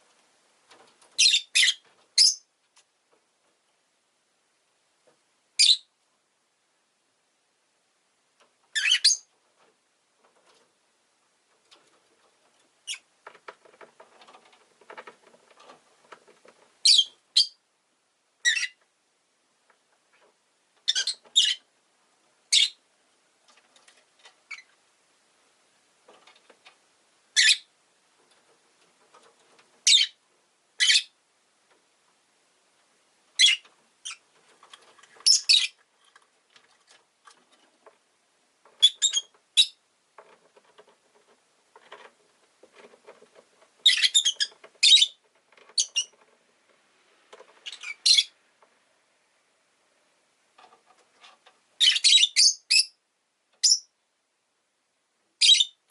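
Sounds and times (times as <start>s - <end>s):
lovebird chirping: 1.2s - 2.5s, 5.6s - 5.9s, 8.7s - 9.3s, 12.8s - 13.0s, 16.8s - 17.6s, 18.4s - 18.8s, 20.9s - 21.6s, 22.5s - 22.8s, 24.5s - 24.7s, 27.4s - 27.7s, 29.8s - 30.2s, 30.8s - 31.2s, 33.4s - 34.2s, 35.2s - 35.8s, 38.8s - 39.8s, 43.8s - 45.2s, 45.8s - 46.1s, 47.6s - 48.4s, 51.8s - 53.0s, 53.6s - 53.9s, 55.4s - 55.8s.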